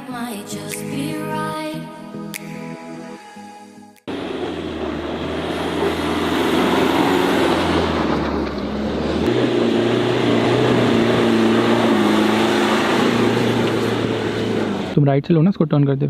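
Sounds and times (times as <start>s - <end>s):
diesel engine labouring: 4.1s - 15.0s.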